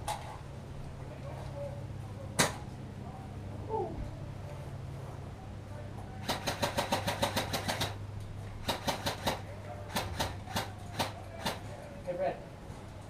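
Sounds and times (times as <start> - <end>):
airsoft gun shots: 6.2 - 8.0, 8.6 - 11.6.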